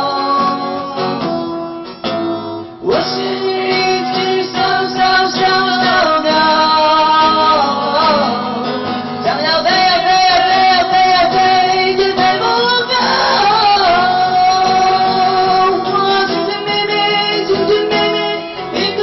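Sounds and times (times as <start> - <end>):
acoustic guitar: 0.0 - 19.0
person singing: 0.0 - 19.0.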